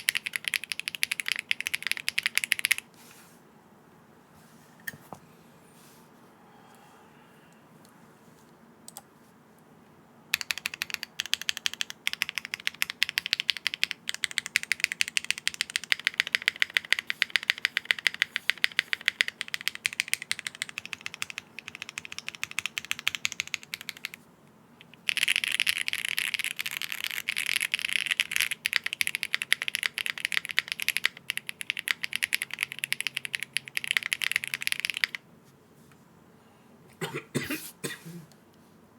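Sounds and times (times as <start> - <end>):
mechanical keyboard typing: 0.0 - 2.8, 10.3 - 24.2, 24.8 - 35.2.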